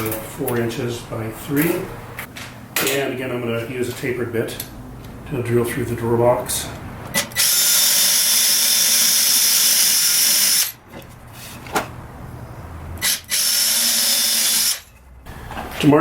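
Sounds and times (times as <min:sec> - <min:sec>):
drill clicks: 0:07.3 - 0:10.8, 0:13.0 - 0:14.8
power drill boring through wood: 0:07.4 - 0:10.8, 0:13.0 - 0:14.8.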